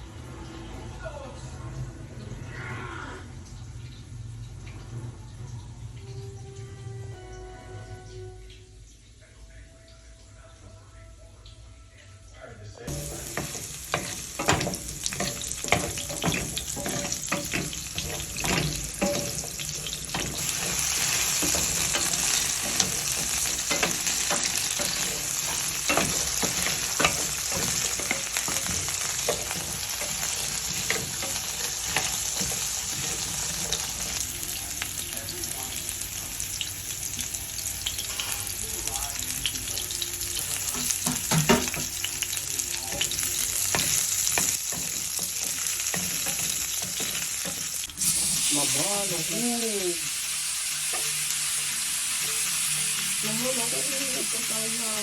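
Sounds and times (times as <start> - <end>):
food sizzling in a pan: 12.9 - 55.0.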